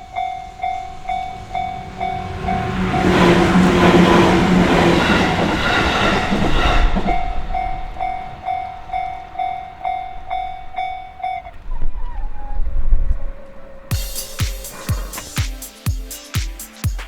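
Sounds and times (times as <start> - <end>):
crossing warning bell ringing: 0.0 - 15.4
train rumbling past: 0.0 - 15.4.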